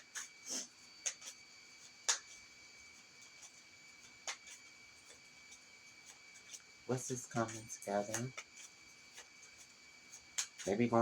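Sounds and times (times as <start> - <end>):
cards tapping and clicking: 2.0 - 2.4, 6.0 - 10.8.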